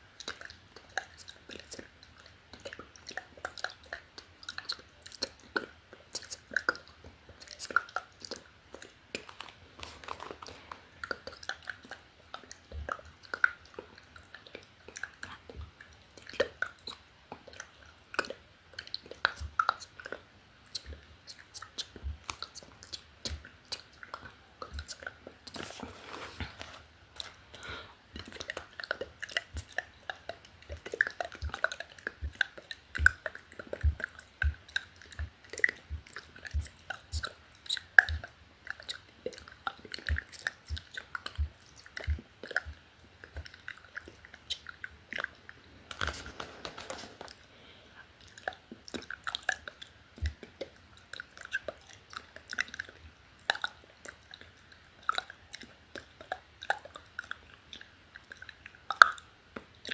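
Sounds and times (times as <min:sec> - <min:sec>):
wet mouth clicks and lip smacks: 0:00.1 - 0:25.7, 0:26.6 - 0:47.5, 0:48.2 - 0:59.9
breathing: 0:09.8 - 0:11.0, 0:27.5 - 0:28.0, 0:47.4 - 0:48.1.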